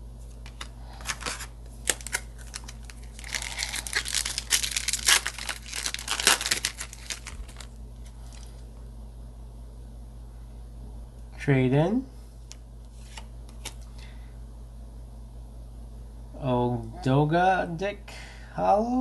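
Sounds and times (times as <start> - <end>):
foil wrapper tearing and crinkling: 0.4 - 8.6.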